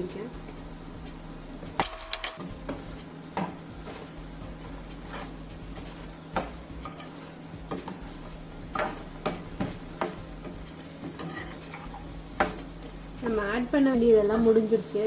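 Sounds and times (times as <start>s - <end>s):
steady low hum: 0.0s - 15.0s
utensil scraping a pan: 2.7s - 12.7s.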